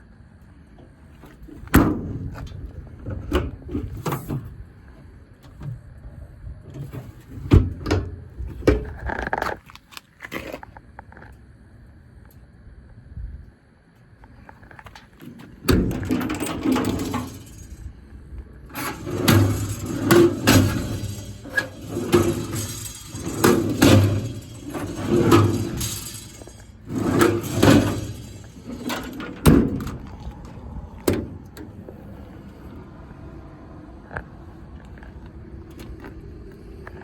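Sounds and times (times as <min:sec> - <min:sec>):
metal truck doors clanking and banging: 0:01.2 - 0:04.7, 0:06.7 - 0:09.0, 0:14.8 - 0:17.9, 0:18.6 - 0:32.3.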